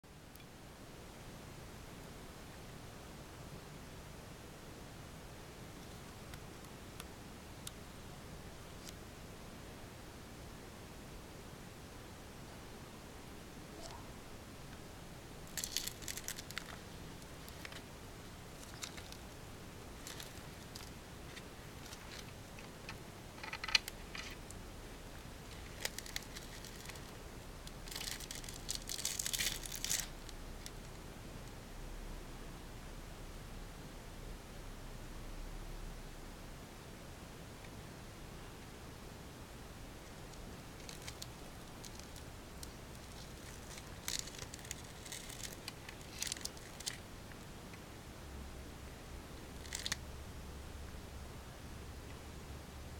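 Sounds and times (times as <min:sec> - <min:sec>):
velcro rasping: 0:43.0 - 0:47.0.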